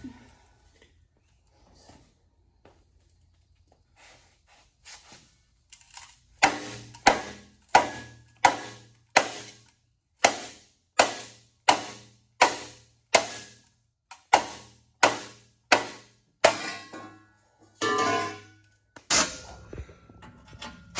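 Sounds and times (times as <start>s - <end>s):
low steady hum: 19.1s - 20.9s.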